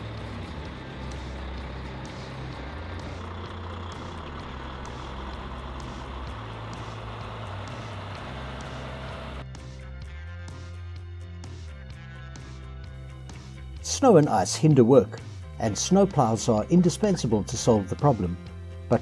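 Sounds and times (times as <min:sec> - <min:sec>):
heavy truck engine rumbling: 0:00.0 - 0:09.4, 0:13.0 - 0:19.0
road and wind noise: 0:00.0 - 0:09.4
music: 0:00.0 - 0:19.0.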